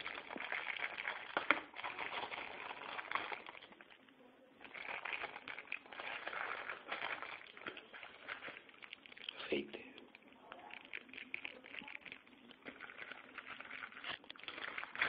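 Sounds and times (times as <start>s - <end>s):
packaging rustling and crinkling: 0.0s - 15.0s.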